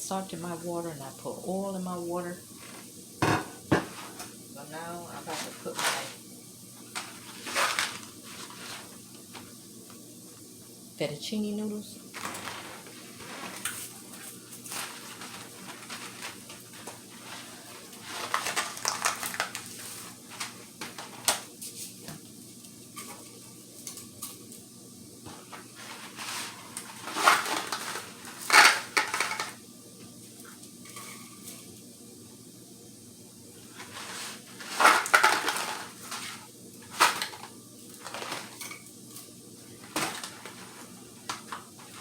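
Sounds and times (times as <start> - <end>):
boiling water: 0.0 - 42.0
rustling: 6.8 - 9.6, 12.0 - 22.0, 25.4 - 29.5
pot and utensil clatter: 26.2 - 29.6, 30.8 - 31.7.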